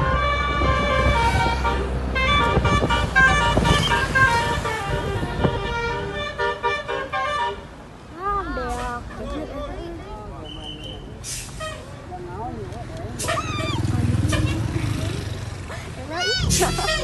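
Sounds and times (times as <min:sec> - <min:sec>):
multi-tone musical air horn: 0:00.0 - 0:07.6.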